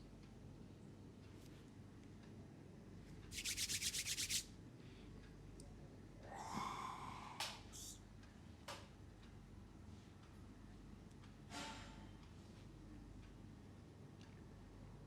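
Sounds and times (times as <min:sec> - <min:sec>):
rubbing strokes: 0:03.3 - 0:04.4
swishing rub: 0:03.3 - 0:04.4.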